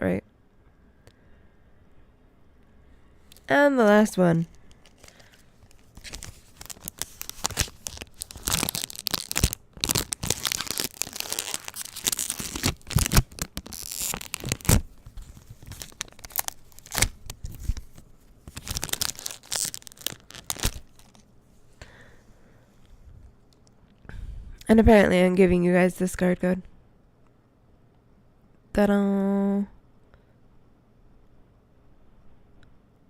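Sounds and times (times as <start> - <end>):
foil wrapper tearing and crinkling: 4.7 - 21.2.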